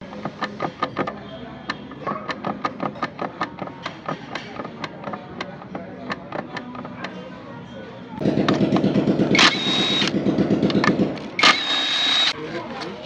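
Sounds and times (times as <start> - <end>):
sharp taps and clicks: 0.0 - 7.2.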